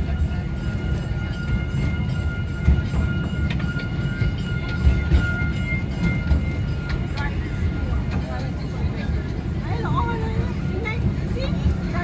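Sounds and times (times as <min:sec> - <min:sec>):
ride-on train rumble: 0:00.0 - 0:12.0.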